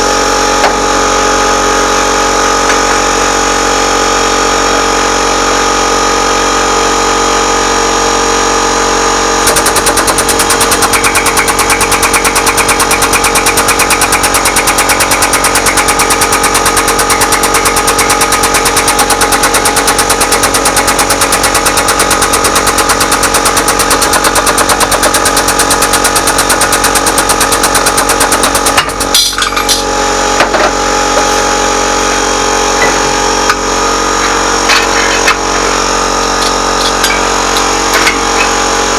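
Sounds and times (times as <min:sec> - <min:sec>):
workshop machinery humming: 0:00.0 - 0:38.9
fast even hammering: 0:09.4 - 0:30.5
metal clanks: 0:36.4 - 0:38.6.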